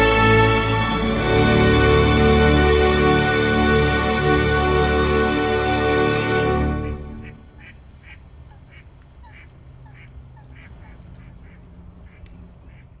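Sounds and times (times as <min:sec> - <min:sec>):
music: 0:00.0 - 0:07.5.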